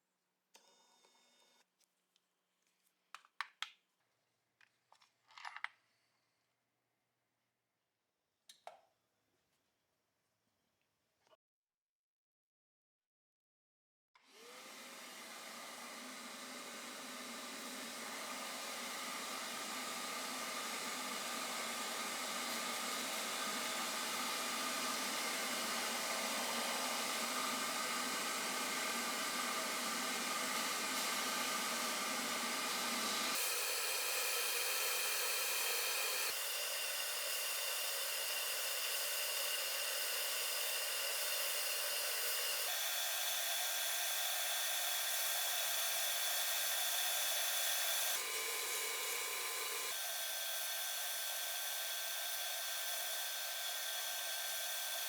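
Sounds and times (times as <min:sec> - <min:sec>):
electric tool whirring with a whine: 0:14.2 - 0:55.0.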